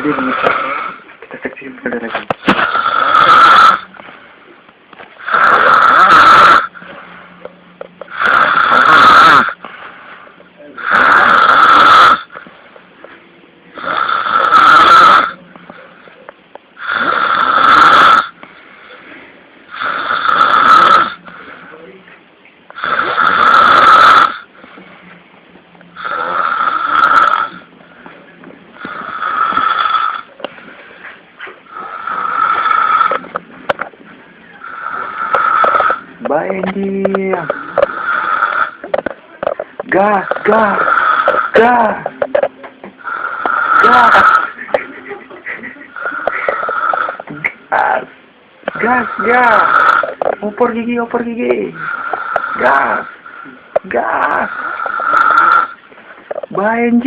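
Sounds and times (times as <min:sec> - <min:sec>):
loud snoring: 0:02.6 - 0:03.9, 0:05.2 - 0:06.8, 0:08.1 - 0:09.6, 0:10.8 - 0:12.4, 0:13.8 - 0:15.4, 0:16.8 - 0:18.4, 0:19.7 - 0:21.4, 0:22.8 - 0:24.5, 0:26.0 - 0:27.7, 0:28.8 - 0:30.3, 0:31.7 - 0:33.4, 0:34.6 - 0:36.1, 0:37.4 - 0:38.8, 0:40.2 - 0:41.9, 0:43.0 - 0:44.7, 0:46.0 - 0:47.4, 0:48.7 - 0:50.4, 0:51.7 - 0:55.8
quiet breathing: 0:06.7 - 0:08.1, 0:09.5 - 0:10.8, 0:18.3 - 0:20.0, 0:21.1 - 0:22.8, 0:24.4 - 0:25.3, 0:25.9 - 0:36.2, 0:51.8 - 0:53.8.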